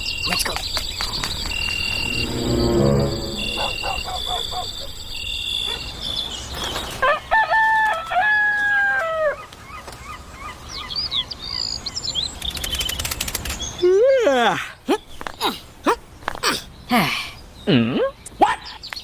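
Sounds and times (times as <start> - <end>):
small birds chirping: 14.9 - 17.4.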